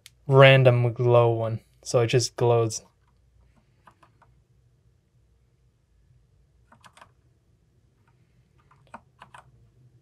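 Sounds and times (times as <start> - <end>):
faint mechanical keyboard clicks: 3.0 - 4.4, 6.7 - 7.2, 8.0 - 9.5.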